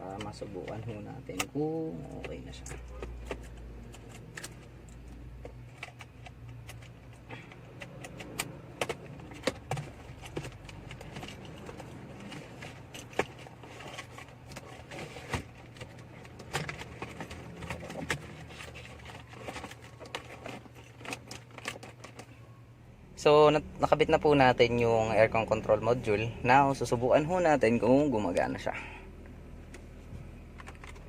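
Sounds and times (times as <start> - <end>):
steady low hum: 0.0 - 31.0
plastic parts clicking: 0.2 - 22.3, 30.5 - 31.0.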